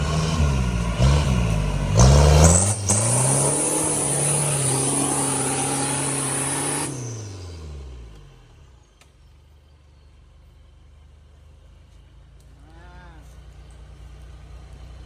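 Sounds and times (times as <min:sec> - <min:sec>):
vehicle engine revving: 0:00.0 - 0:08.8.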